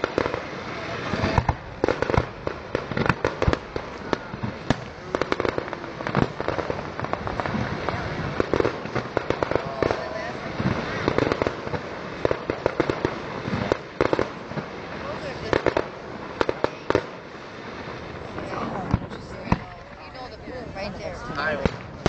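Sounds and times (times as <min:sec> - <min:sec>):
fireworks popping and crackling: 0:00.0 - 0:22.0.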